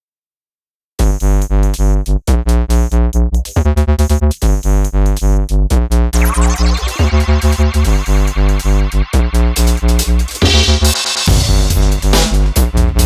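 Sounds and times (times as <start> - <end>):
pulsing bass: 1.9 - 13.0
synthesizer chords: 6.2 - 12.8.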